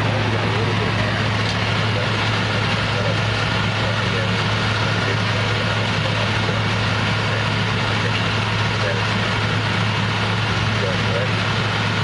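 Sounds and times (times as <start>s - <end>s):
truck diesel engine running: 0.0s - 12.0s.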